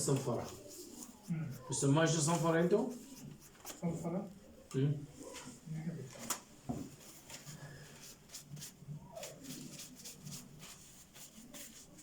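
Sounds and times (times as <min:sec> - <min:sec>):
sandpaper scratching on rubber: 0:08.3 - 0:12.0.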